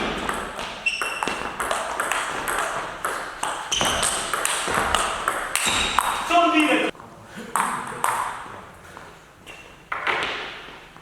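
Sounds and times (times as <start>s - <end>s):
table tennis ball hits: 0.0s - 6.4s, 7.6s - 8.5s.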